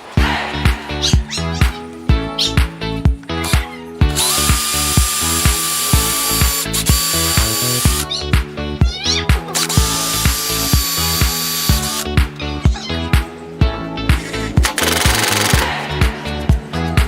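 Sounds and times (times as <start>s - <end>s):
background music with steady beat: 0.0s - 17.0s
handheld router motor whining: 4.2s - 8.1s, 9.6s - 12.0s.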